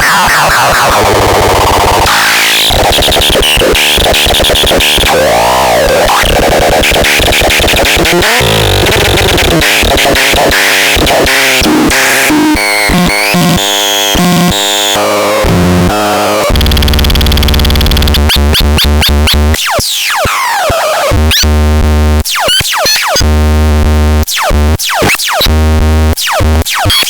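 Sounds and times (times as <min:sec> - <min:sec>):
stuttering electronic pulses: 0:00.0 - 0:19.4
stepped synthesizer tones: 0:00.0 - 0:19.5
harsh electronic noise: 0:00.0 - 0:21.4.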